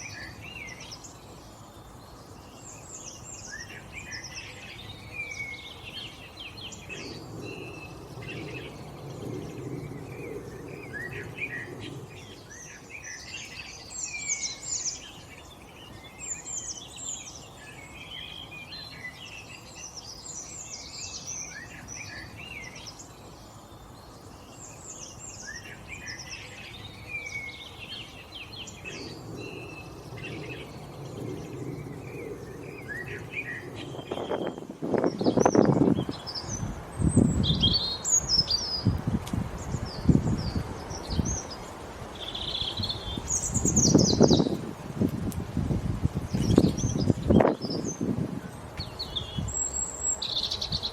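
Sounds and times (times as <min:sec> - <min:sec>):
birds chirping: 0:00.0 - 0:50.9
low rumble: 0:28.8 - 0:36.1.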